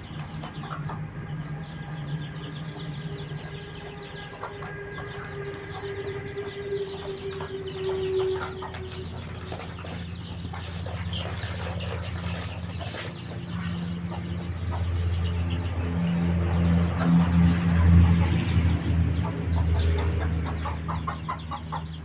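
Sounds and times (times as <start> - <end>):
chickens clucking: 0.0 - 22.0.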